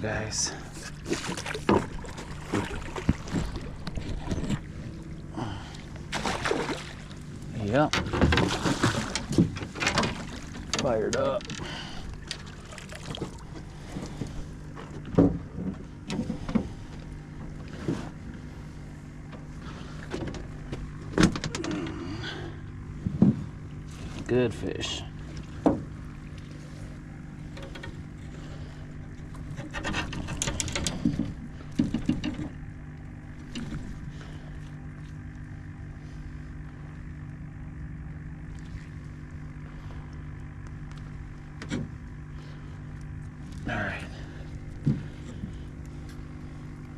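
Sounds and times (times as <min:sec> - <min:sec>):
steady low hum: 0:00.0 - 0:46.9
knocks and thumps in a boat: 0:00.6 - 0:46.9.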